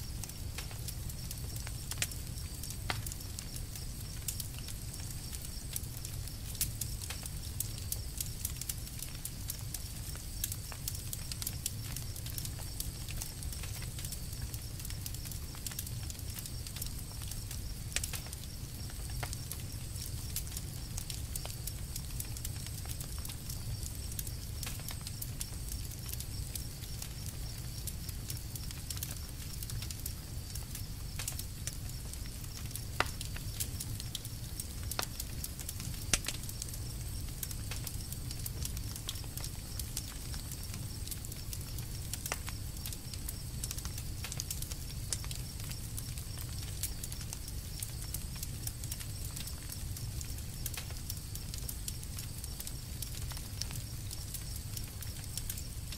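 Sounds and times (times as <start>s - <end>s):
burning wood crackling and popping: 0.0s - 55.9s
fire low rumble: 0.0s - 55.9s.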